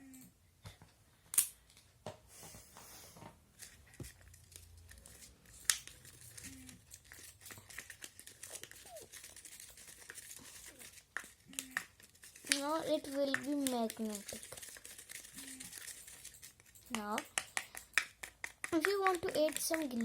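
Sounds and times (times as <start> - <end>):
slime crinkling and crackling: 4.2 - 16.3, 18.2 - 20.0.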